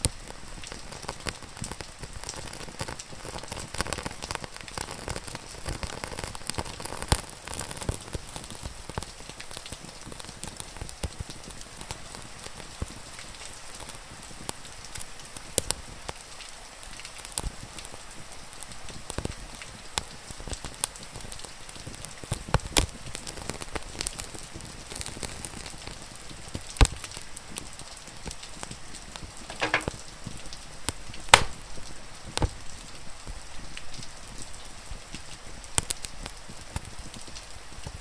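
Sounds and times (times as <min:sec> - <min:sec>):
wood fire crackling: 0:00.0 - 0:16.2, 0:16.8 - 0:38.0
rain hissing: 0:00.0 - 0:38.0
loud sharp pops of fire: 0:29.2 - 0:30.4, 0:31.2 - 0:32.5.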